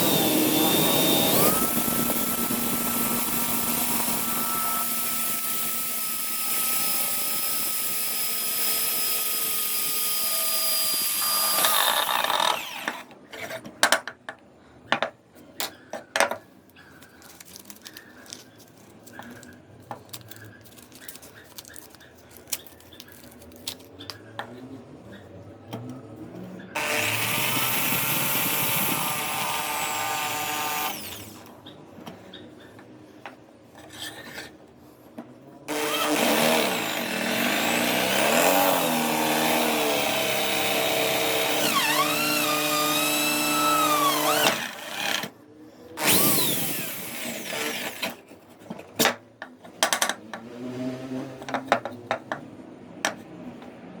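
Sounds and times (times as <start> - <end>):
drill press boring into wood: 0.0 - 13.1, 26.8 - 31.5, 35.7 - 45.3, 46.0 - 48.1.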